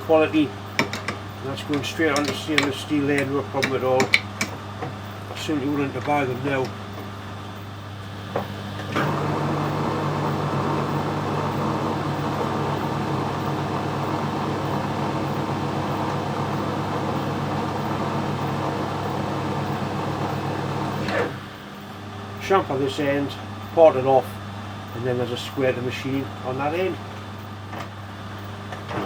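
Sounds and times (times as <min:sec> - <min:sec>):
lathe humming and whirring: 0:04.7 - 0:22.0.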